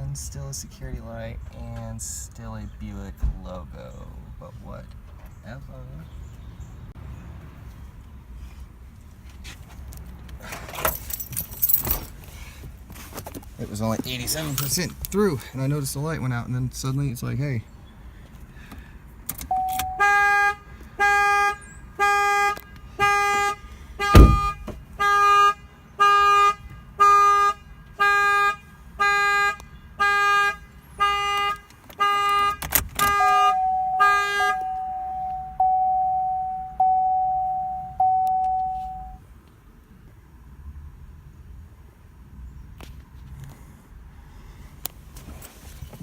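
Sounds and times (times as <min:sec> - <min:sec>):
held alarm tone: 0:19.5 - 0:20.4, 0:33.1 - 0:39.2
car horn honking: 0:19.5 - 0:39.2.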